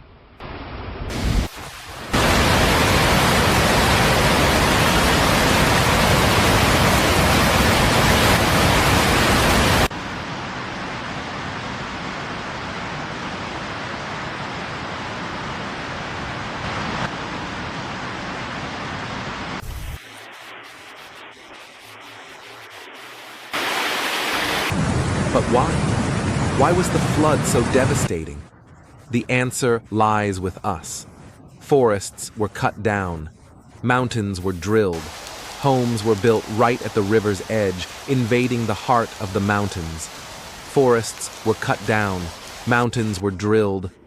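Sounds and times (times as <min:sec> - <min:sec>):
rushing floodwater: 0:01.7 - 0:15.8, 0:23.5 - 0:28.2, 0:34.4 - 0:43.4.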